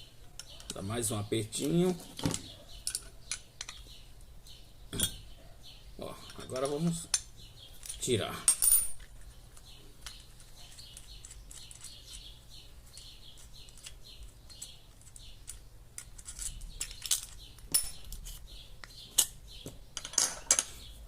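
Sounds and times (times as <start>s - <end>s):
hand tools clinking on metal: 1.6s - 3.8s, 6.2s - 9.1s
faint high chirping: 9.0s - 21.0s.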